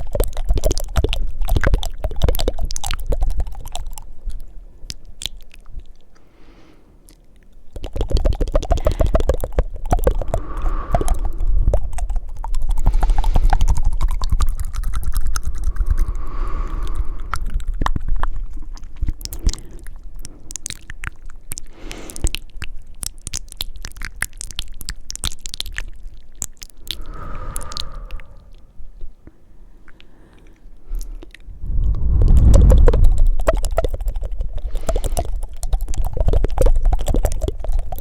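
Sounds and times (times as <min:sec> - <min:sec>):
tongue flutters and clicks: 0:00.0 - 0:06.3, 0:07.0 - 0:38.0
breathy puffs: 0:08.6 - 0:18.0, 0:26.8 - 0:31.9, 0:33.9 - 0:35.8.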